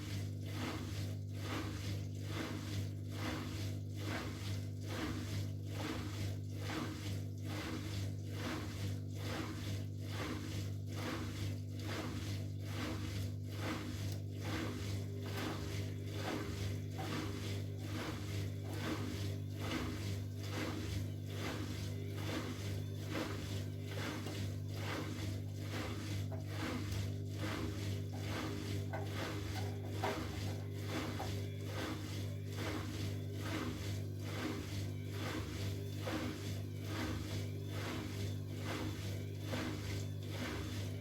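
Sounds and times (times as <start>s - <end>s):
washing machine drum swishing: 0.0s - 41.0s
washing machine motor hum: 0.0s - 41.0s.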